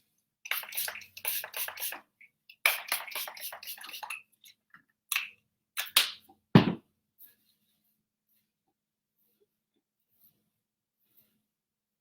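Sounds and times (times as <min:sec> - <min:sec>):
hissing spray bottle: 0:00.5 - 0:04.1.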